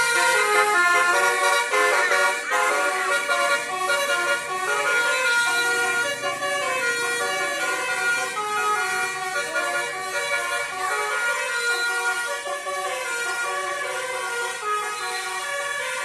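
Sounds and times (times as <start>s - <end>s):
musical air horn playing tune: 0.0s - 16.0s.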